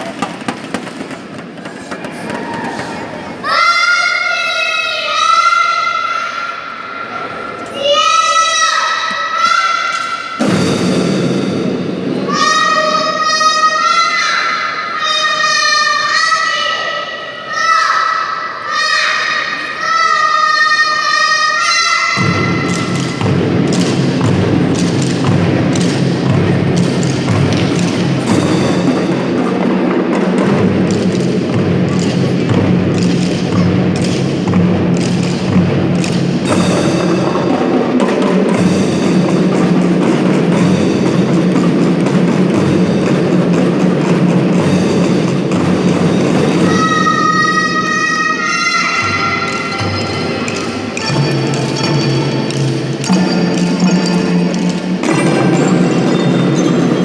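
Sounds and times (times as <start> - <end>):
drum band playing: 0.0 - 3.6, 10.4 - 12.5, 22.2 - 47.6, 48.7 - 57.0.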